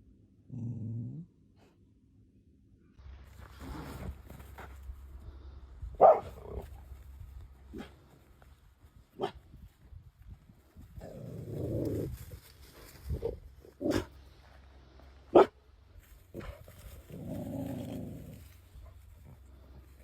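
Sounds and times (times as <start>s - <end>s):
dog barking: 6.0s - 6.5s, 9.2s - 9.4s, 15.3s - 15.6s
long low dog sounds: 10.6s - 20.0s.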